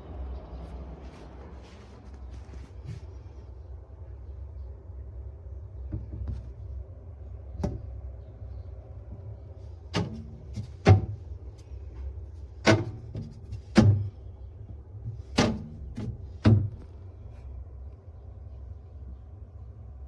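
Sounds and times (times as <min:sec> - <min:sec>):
steady low hum: 0:00.0 - 0:20.0
sharp knocks and clunks: 0:05.9 - 0:06.6, 0:07.6 - 0:08.0, 0:10.0 - 0:17.0.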